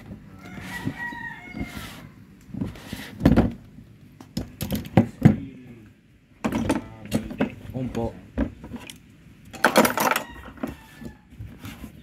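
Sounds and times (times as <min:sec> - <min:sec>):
rooster crowing: 0:00.3 - 0:02.2, 0:09.9 - 0:11.4.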